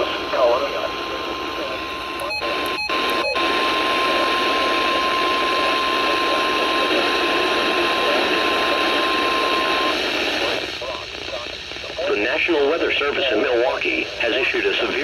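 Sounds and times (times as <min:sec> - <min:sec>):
radio hiss: 0:00.0 - 0:15.0
steady high warning beep: 0:00.4 - 0:09.9.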